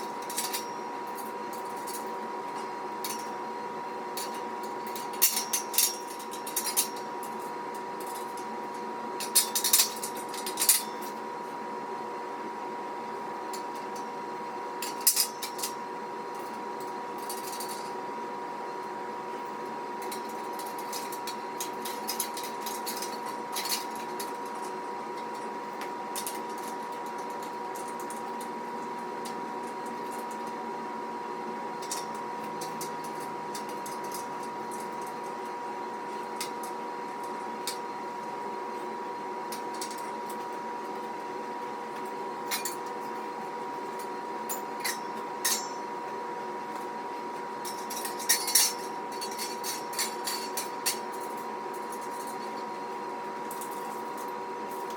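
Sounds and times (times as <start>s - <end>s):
steady hum: 0.0s - 54.9s
metallic clinks of steel parts: 47.6s - 52.5s.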